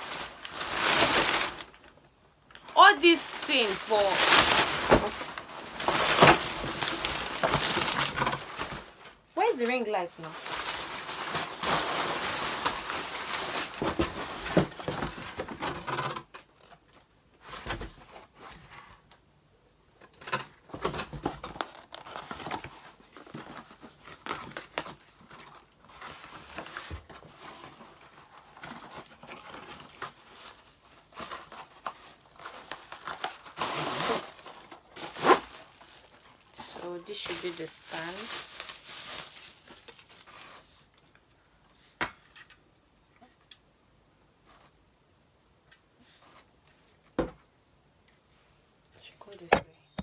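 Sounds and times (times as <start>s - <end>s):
packaging rustling and tearing: 0.0s - 9.3s, 10.2s - 16.8s, 20.0s - 41.2s.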